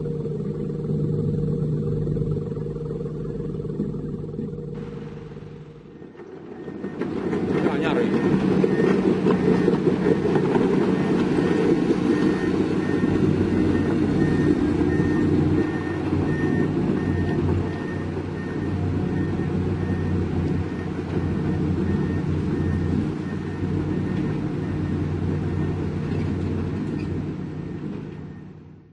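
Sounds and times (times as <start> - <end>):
heavy diesel engine running: 0.0 - 28.9
reversing alarm beeping: 4.2 - 26.2.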